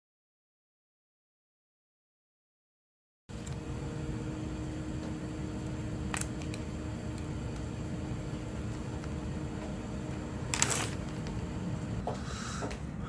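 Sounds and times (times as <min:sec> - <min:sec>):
steady low hum: 0:03.3 - 0:13.0.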